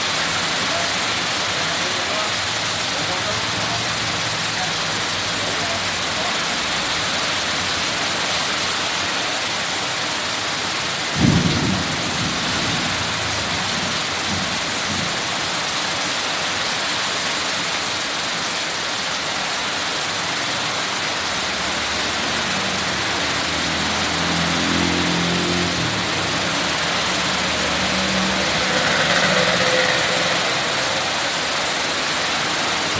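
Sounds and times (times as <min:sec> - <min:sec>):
heavy rain pouring: 0:00.0 - 0:32.9
thunder clap rumbling: 0:11.2 - 0:13.4.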